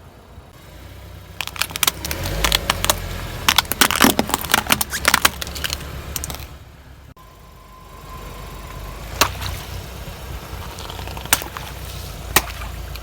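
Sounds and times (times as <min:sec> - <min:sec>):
low car engine rumble: 0:00.0 - 0:13.0
tyre crushing crunchy objects: 0:01.4 - 0:06.6, 0:09.1 - 0:13.0.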